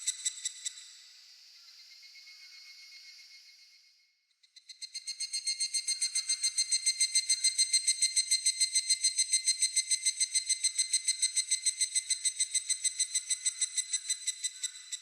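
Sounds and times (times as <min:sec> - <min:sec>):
cicada pulsed song: 0:04.7 - 0:15.0.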